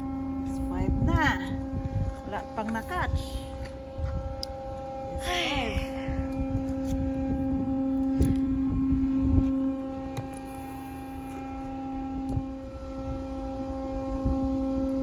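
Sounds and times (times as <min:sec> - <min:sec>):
steady droning hum: 0:00.0 - 0:15.0
wind rumble on microphone: 0:00.0 - 0:15.0.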